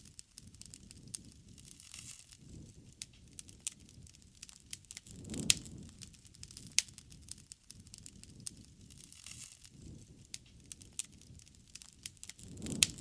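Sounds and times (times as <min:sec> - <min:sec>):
wood fire crackling and popping: 0:00.0 - 0:13.0.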